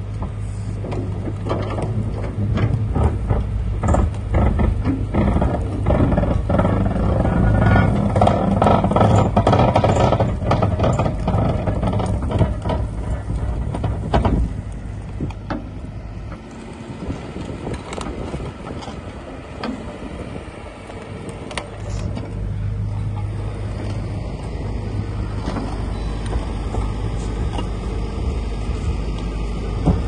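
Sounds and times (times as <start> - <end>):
excavator diesel engine running: 0.0 - 30.0
metallic clanks and knocks: 0.2 - 14.6.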